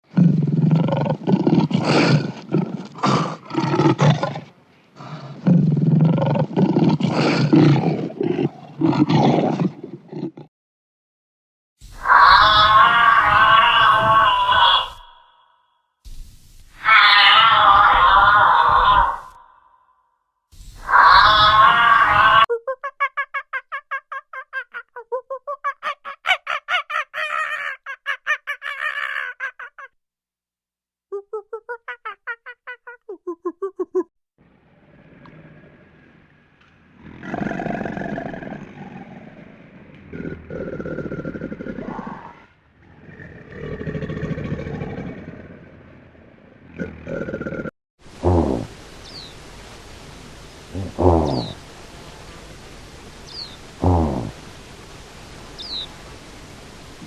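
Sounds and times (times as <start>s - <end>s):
lion roaring: 0.1s - 10.5s, 34.7s - 47.7s.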